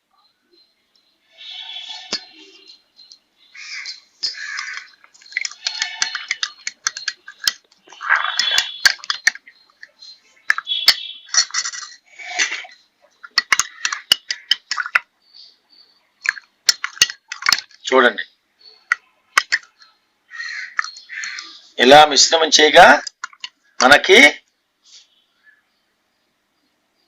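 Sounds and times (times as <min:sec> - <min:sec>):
spoon scraping vessel: 0:04.2 - 0:09.4, 0:10.5 - 0:15.0
spoon clinking against vessel: 0:04.2 - 0:12.6.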